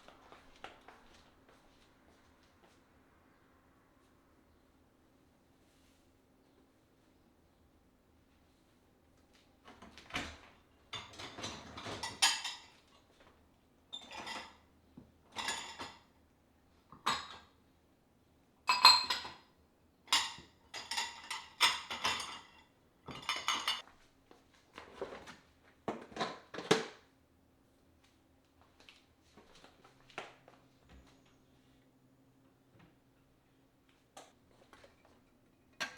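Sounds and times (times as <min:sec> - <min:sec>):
dishes and cutlery clinking: 0:11.0 - 0:13.0, 0:15.3 - 0:16.1, 0:18.7 - 0:19.5, 0:20.1 - 0:23.8.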